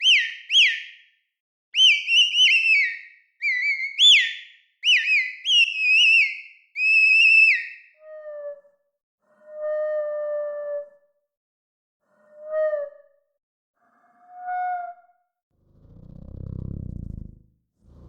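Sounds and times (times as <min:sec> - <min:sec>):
synth whistled bird chirps: 0:00.0 - 0:01.1, 0:01.8 - 0:08.6.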